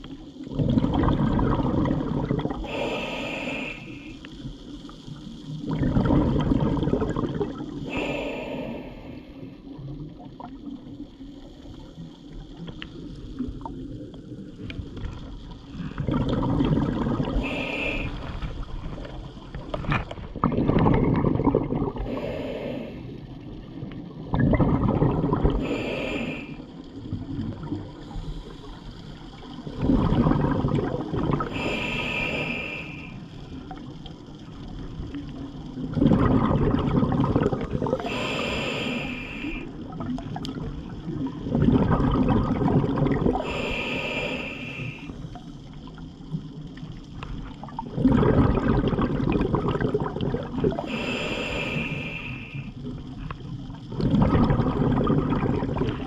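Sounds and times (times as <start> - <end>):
exhaled bubbles rushing: 0.0 - 4.5, 5.5 - 8.2, 8.9 - 28.1, 29.2 - 43.7, 44.4 - 56.0
diver inhaling through regulator: 2.5 - 4.4, 7.7 - 9.6, 17.2 - 18.7, 21.9 - 23.4, 25.3 - 26.8, 31.3 - 33.4, 37.8 - 39.8, 43.2 - 45.3, 50.7 - 52.8.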